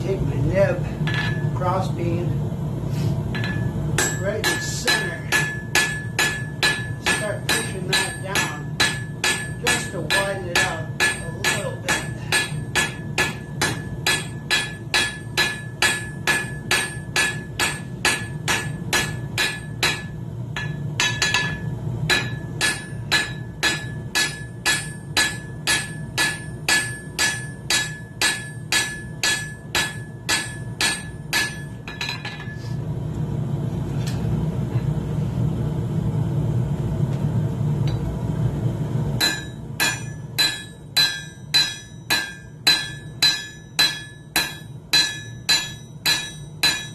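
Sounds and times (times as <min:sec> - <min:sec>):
hammer on metal on anvil: 0:01.1 - 0:01.5, 0:03.3 - 0:32.6, 0:39.2 - 0:46.9.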